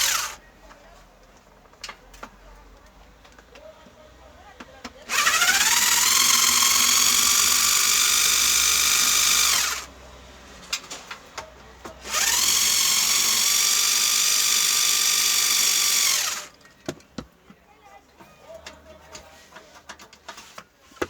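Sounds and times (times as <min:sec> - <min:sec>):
drill-driver whining: 0:00.0 - 0:00.4, 0:05.1 - 0:09.9, 0:12.0 - 0:16.5.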